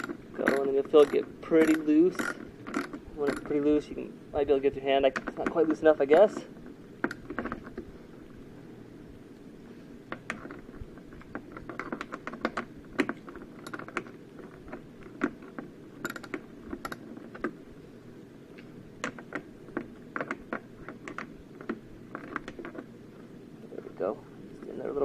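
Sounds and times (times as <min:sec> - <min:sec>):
socket ratchet clicking: 0:00.0 - 0:03.6, 0:16.0 - 0:17.0.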